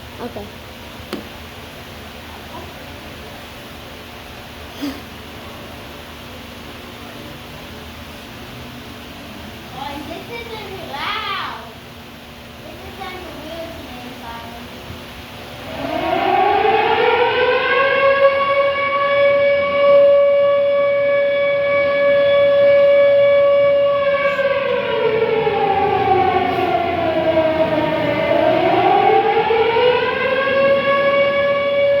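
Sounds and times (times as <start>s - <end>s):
tornado siren wailing: 14.1s - 32.0s.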